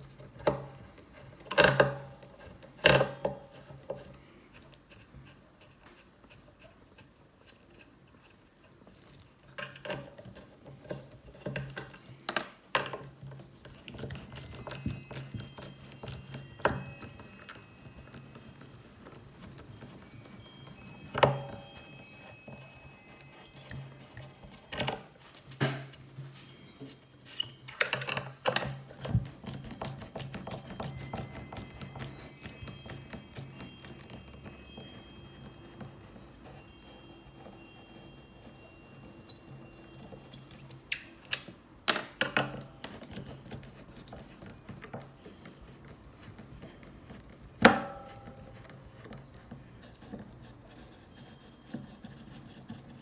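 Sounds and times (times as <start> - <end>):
screws squeaking in wood: 13.7 - 25.5, 26.6 - 41.4.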